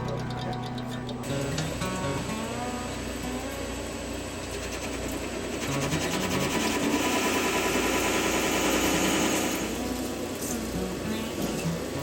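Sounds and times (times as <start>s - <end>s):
background music: 0.0s - 4.2s, 8.6s - 12.0s.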